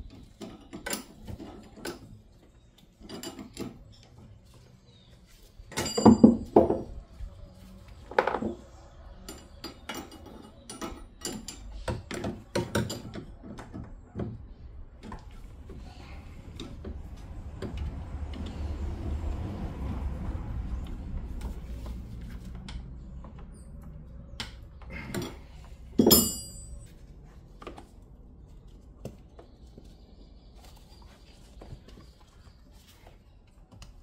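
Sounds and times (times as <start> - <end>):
metal tools clicking and knocking: 0.1 - 2.2, 2.8 - 4.2, 9.2 - 13.9, 23.6 - 26.9
loud ringing metal clank: 26.0 - 26.8.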